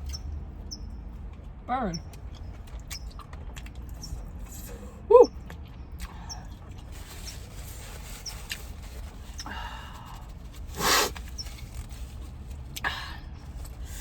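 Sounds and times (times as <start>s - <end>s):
chewing and mouth clicks: 1.2s - 4.7s, 5.3s - 7.5s
hissing breath: 9.4s - 11.2s.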